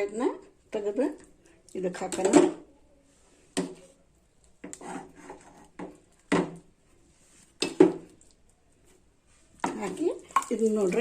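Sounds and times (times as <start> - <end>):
utensils scraping a pot: 4.6 - 5.9.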